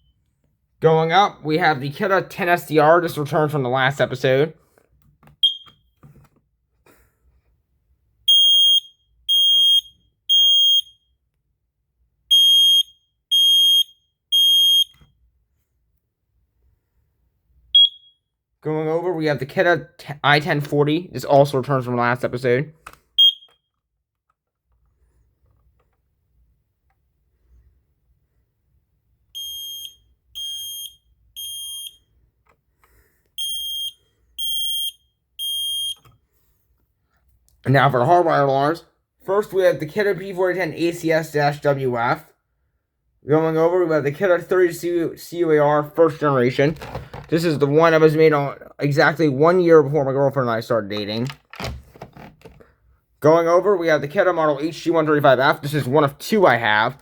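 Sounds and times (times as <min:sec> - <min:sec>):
smoke alarm chirp: 0:00.0 - 0:00.2, 0:05.4 - 0:05.9, 0:08.3 - 0:11.2, 0:12.3 - 0:15.0, 0:17.8 - 0:18.3, 0:23.2 - 0:23.8, 0:29.4 - 0:32.1, 0:33.4 - 0:36.1
smoke alarm beeping: 0:05.4 - 0:05.9, 0:08.3 - 0:11.2, 0:12.3 - 0:15.1, 0:17.7 - 0:18.4, 0:23.2 - 0:23.8, 0:29.4 - 0:32.1, 0:33.4 - 0:36.1.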